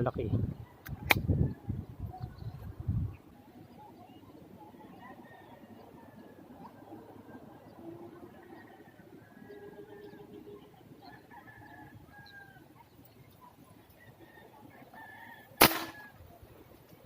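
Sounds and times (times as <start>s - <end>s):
roosters crowing: 7.7s - 12.9s, 13.9s - 16.3s
airgun firing: 15.6s - 16.1s.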